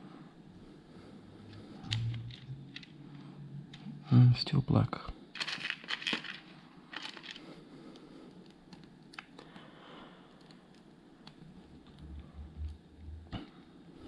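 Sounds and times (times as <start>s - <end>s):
plastic pieces clicking and rattling: 5.3s - 7.4s.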